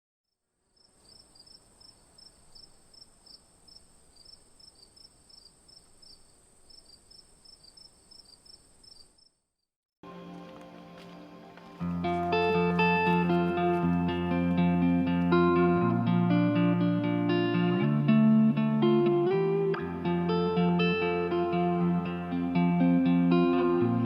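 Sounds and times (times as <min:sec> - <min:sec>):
crickets calling: 0:00.7 - 0:09.6.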